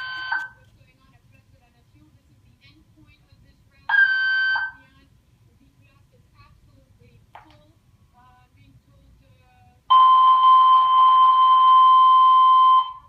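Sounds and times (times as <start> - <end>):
fire alarm two-pitch tone: 0.0 - 0.5, 9.9 - 13.0.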